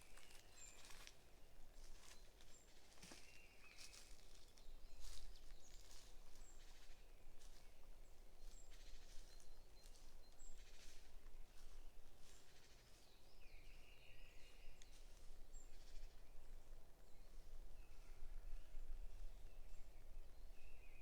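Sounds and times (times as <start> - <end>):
birds chirping and peeping: 1.9 - 16.2.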